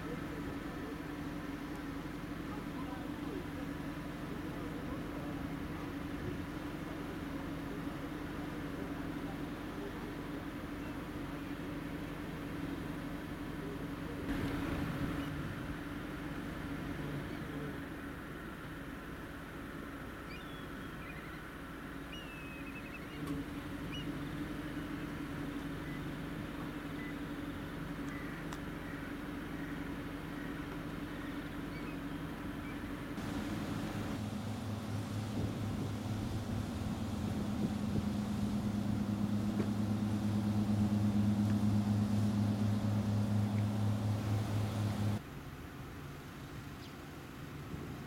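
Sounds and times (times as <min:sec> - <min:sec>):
steady low hum: 0:00.0 - 0:48.0
faint high chirping calls: 0:20.2 - 0:24.2, 0:26.8 - 0:27.4, 0:28.0 - 0:32.9.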